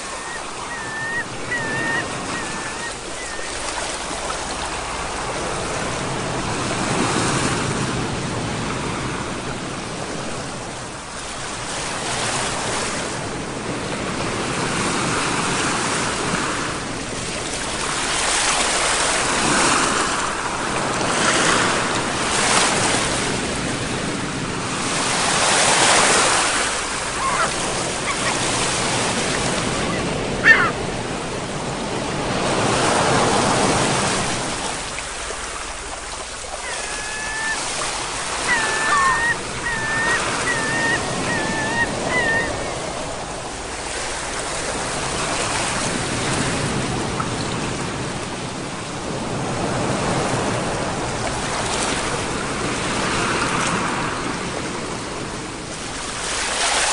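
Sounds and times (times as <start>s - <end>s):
ocean waves breaking on shore: 0.0s - 56.9s.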